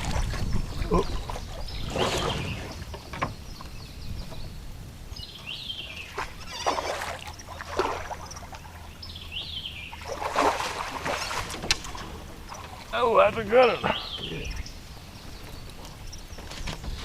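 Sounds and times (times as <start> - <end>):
water splashing: 0.0 - 3.0, 5.9 - 9.1, 9.8 - 14.5.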